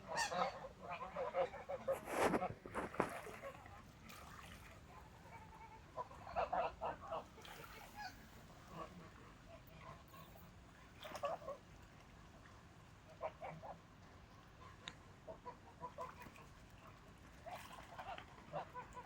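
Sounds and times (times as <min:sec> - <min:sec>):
geese honking: 0:00.1 - 0:03.6.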